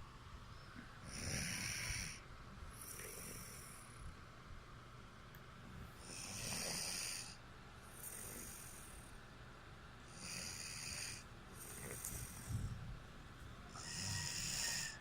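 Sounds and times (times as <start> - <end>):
woman snoring: 1.1 - 2.2, 6.0 - 8.9, 10.1 - 12.6, 13.8 - 15.0.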